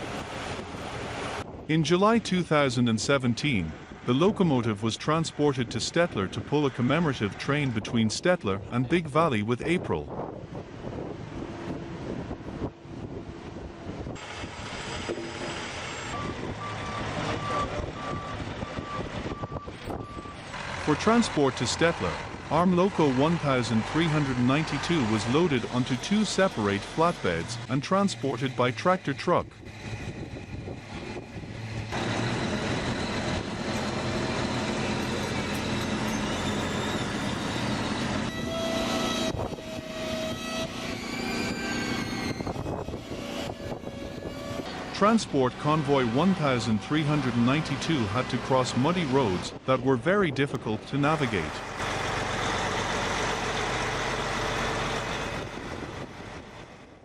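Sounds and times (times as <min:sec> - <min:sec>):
heavy vehicle engine running: 0:00.0 - 0:57.0
outdoor work noise: 0:00.0 - 0:57.0
reversing alarm beeping: 0:16.1 - 0:20.4, 0:32.1 - 0:44.7
horn held note: 0:38.3 - 0:40.8.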